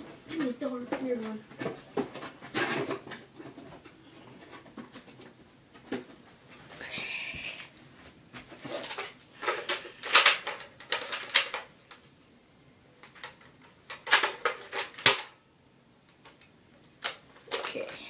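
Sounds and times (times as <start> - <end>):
hard objects clicking and knocking: 8.6 - 12.0, 13.0 - 15.4.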